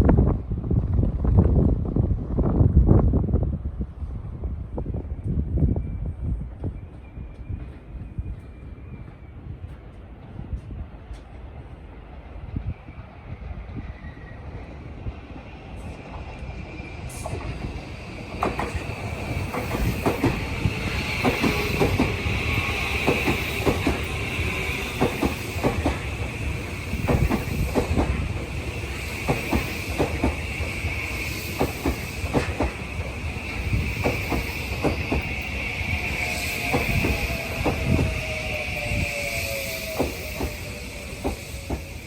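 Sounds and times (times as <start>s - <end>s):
low train rumble: 0.0s - 42.0s
train wheels clacking over joints: 17.1s - 42.0s
high-pitched wheel squeal: 33.4s - 42.0s.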